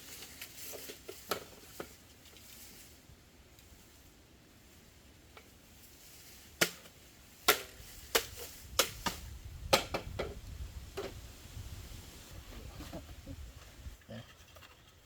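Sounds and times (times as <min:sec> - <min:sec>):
blade chopping wood: 0:06.6 - 0:10.4.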